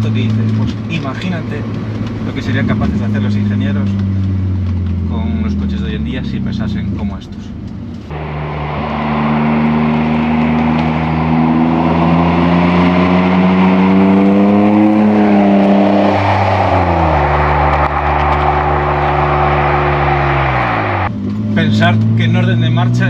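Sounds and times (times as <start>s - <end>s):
car engine accelerating: 8.0s - 22.5s.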